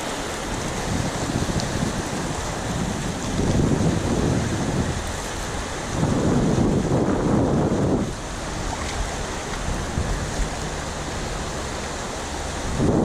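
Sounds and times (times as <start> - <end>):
rushing river water: 0.0 - 13.0
wind buffeting microphone: 0.0 - 13.0.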